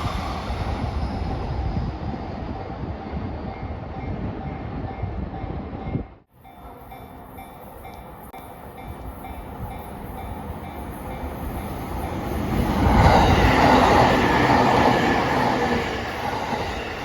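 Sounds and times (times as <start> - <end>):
train rumbling over crossing: 0.0 - 17.0
crossing warning bell ringing: 6.4 - 12.6.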